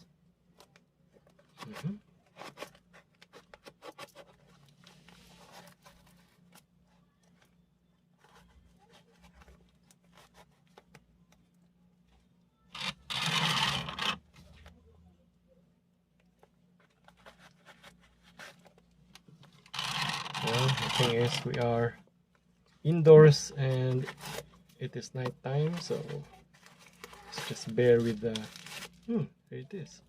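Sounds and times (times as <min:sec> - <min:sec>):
cardboard handling scrapes and clicks: 0:19.6 - 0:21.6
cardboard packing ripping: 0:26.8 - 0:29.1.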